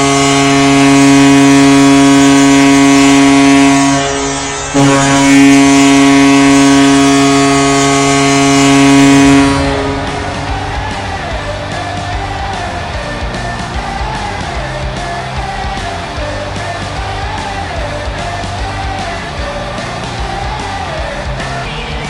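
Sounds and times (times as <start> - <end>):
arena goal horn blasting: 0.0 - 12.5
music: 0.0 - 22.0.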